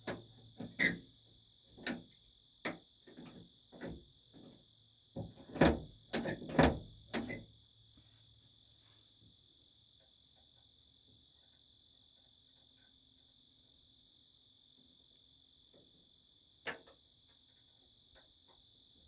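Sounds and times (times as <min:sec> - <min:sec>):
crickets chirring: 0:00.0 - 0:08.7
faint small ticks: 0:16.6 - 0:18.8.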